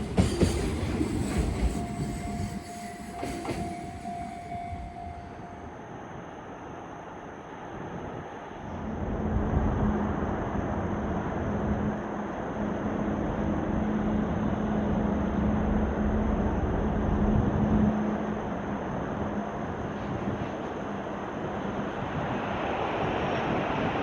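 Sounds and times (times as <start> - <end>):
freight train wheels rumbling on rail: 0.0 - 5.8
locomotive hum: 0.0 - 23.2.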